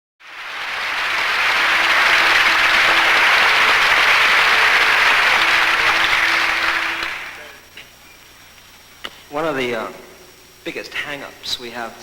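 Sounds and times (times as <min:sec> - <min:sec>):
audience applauding: 0:00.2 - 0:07.6.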